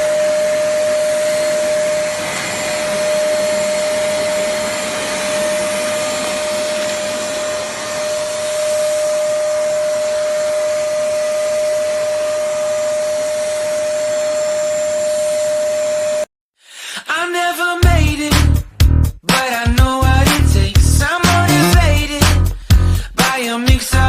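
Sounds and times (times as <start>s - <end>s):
vacuum cleaner running: 0.0s - 16.3s.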